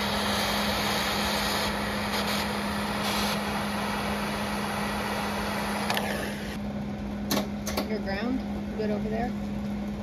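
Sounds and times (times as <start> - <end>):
torch flame hissing: 0.0 - 6.6
constant low hum: 0.0 - 10.0.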